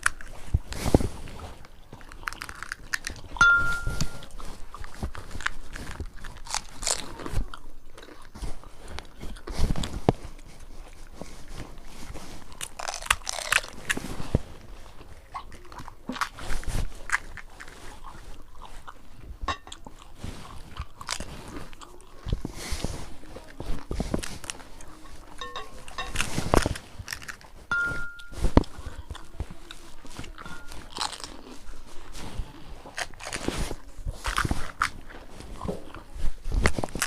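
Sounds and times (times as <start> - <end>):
chewing: 0.0 - 37.0
crisp shells cracking when bitten: 2.0 - 3.4, 4.2 - 8.3, 12.5 - 14.0, 15.4 - 18.9, 23.5 - 27.7, 30.3 - 31.7, 32.9 - 35.2.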